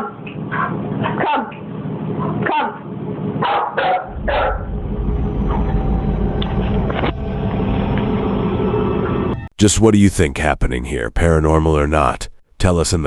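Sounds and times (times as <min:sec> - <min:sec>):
dog barking: 0:00.0 - 0:01.6, 0:02.2 - 0:02.8, 0:03.4 - 0:04.7
steady low hum: 0:00.0 - 0:03.4, 0:04.0 - 0:13.0.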